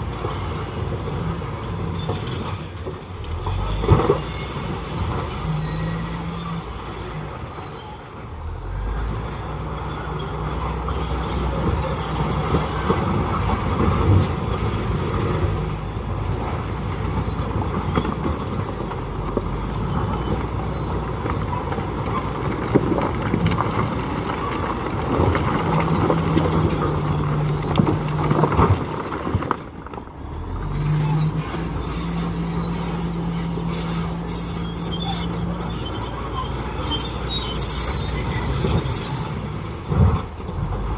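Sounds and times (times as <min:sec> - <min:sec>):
diesel engine running: 0:09.7 - 0:40.9.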